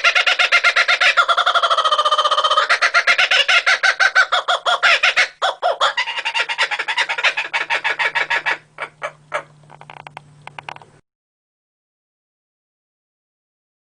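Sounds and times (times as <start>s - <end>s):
bird calling in rapid notes: 0.0s - 9.6s.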